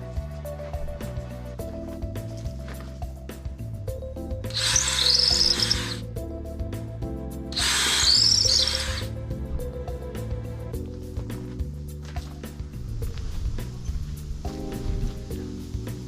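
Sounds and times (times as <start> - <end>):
background music: 0.0 - 16.0
power drill boring: 4.5 - 6.0, 7.6 - 9.1.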